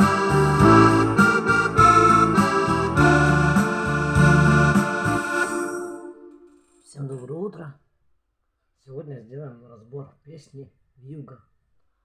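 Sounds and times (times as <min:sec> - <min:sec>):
bass line: 0:00.0 - 0:05.6
keyboard playing organ chords: 0:00.0 - 0:06.6.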